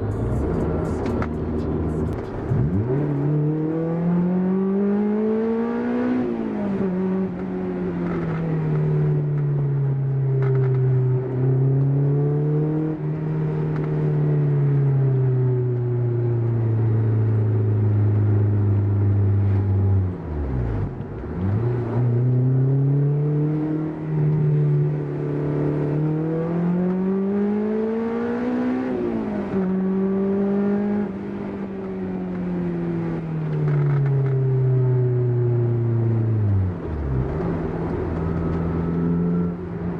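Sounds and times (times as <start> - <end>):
car engine revving: 0.0 - 9.1.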